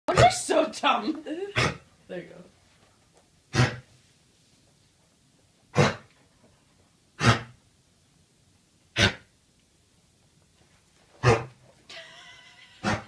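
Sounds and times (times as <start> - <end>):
animal coughing: 1.6 - 1.8, 3.5 - 3.9, 5.7 - 6.1, 7.2 - 7.6, 9.0 - 9.3, 11.2 - 13.0.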